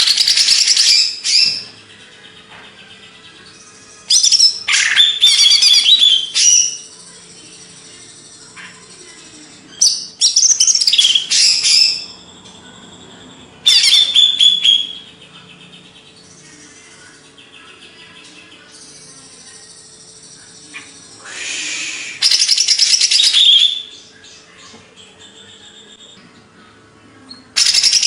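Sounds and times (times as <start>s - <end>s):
leafbird singing: 0.0s - 26.2s, 27.3s - 28.0s.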